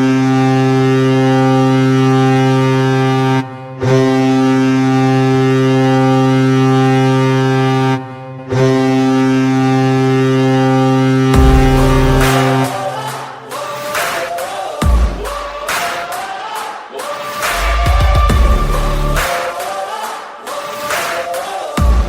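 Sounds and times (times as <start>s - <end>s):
deep goal horn blasts: 0.0s - 13.0s
music: 0.0s - 22.0s.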